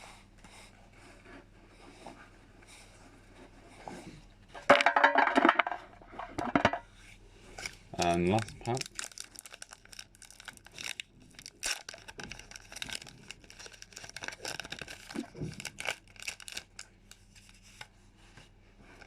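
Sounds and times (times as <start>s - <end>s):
foil wrapper torn and crinkled: 7.6s - 17.6s.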